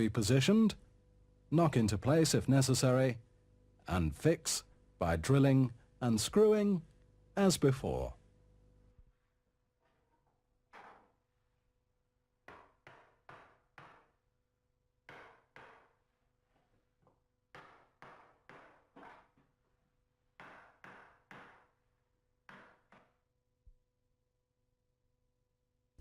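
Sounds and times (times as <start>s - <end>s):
hammer knocking floorboard: 10.7s - 11.2s, 12.4s - 14.2s, 15.0s - 16.1s, 17.0s - 19.5s, 20.4s - 21.8s, 22.4s - 23.2s.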